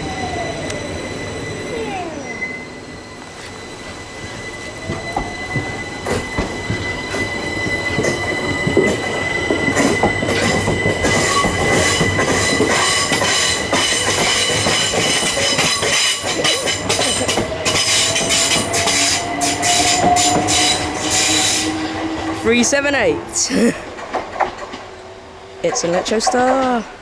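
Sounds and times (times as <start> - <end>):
high wheel squeal: 0.0 - 23.1
electric train passing: 0.0 - 27.0
wheels clicking over rail joints: 5.0 - 21.6, 23.8 - 25.0, 25.6 - 27.0.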